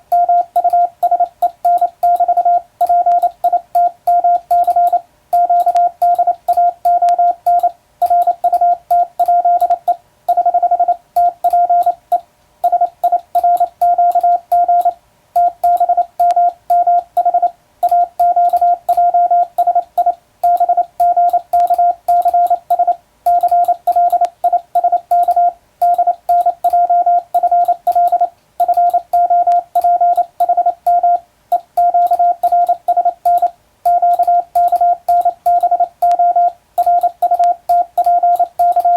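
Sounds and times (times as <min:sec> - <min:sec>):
morse code beeps: 0:00.0 - 0:38.9
telegraph key clicks: 0:19.9 - 0:22.5, 0:27.4 - 0:38.9.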